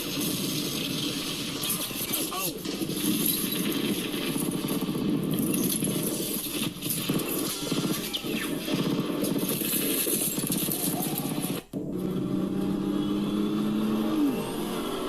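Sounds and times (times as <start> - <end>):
engine-like drone: 10.4 - 15.0.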